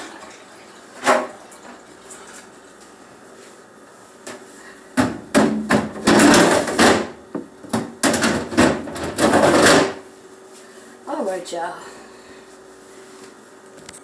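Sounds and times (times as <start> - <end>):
sharp knocks and clattering: 5.0 - 10.0.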